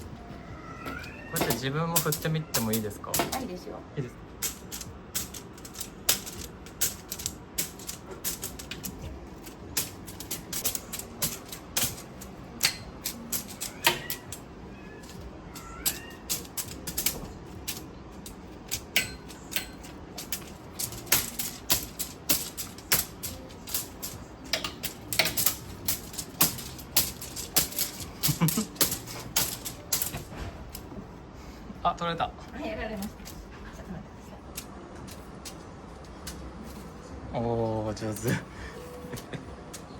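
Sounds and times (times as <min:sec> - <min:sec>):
cat toy clicking and tapping: 0:00.9 - 0:03.5, 0:04.4 - 0:14.4, 0:15.0 - 0:30.2.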